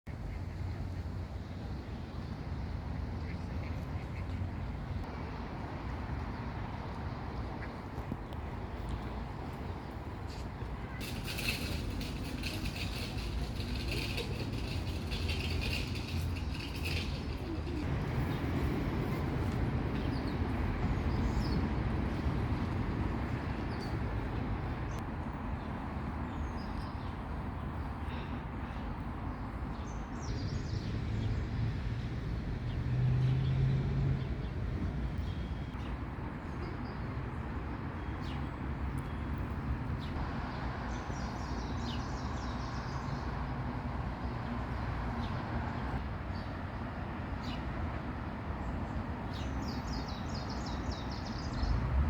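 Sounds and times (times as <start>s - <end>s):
low rumble of city traffic: 0.1s - 52.0s
small birds chirping: 48.6s - 51.8s.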